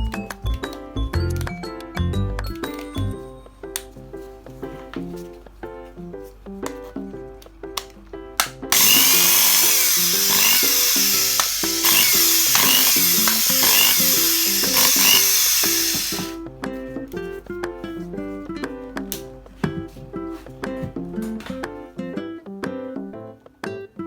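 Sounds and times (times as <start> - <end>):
cordless power tool motor whining: 8.7 - 16.4.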